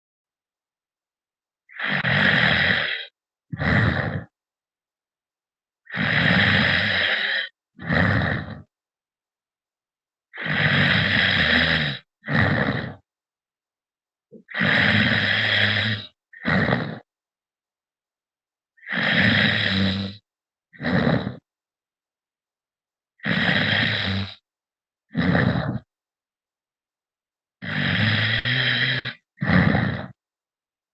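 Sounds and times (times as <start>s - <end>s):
man snoring over phone: 1.7s - 4.4s, 5.8s - 8.8s, 10.3s - 13.1s, 14.4s - 17.1s, 18.8s - 21.5s, 23.2s - 24.5s, 25.1s - 26.0s, 27.6s - 30.2s.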